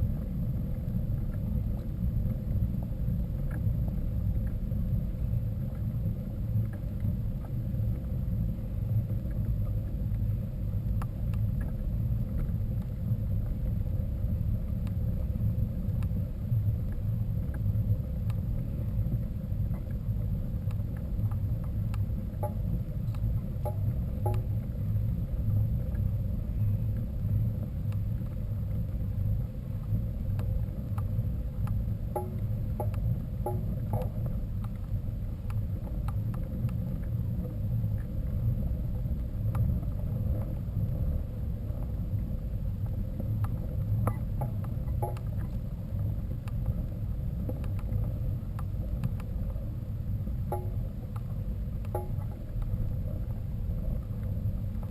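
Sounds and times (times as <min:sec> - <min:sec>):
low rumbling noise: 0:00.0 - 0:54.9.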